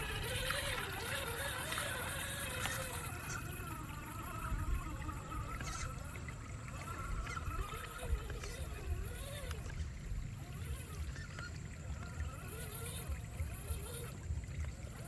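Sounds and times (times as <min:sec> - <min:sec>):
rc car motor whine: 0:00.0 - 0:15.0
water splashing: 0:00.0 - 0:15.0.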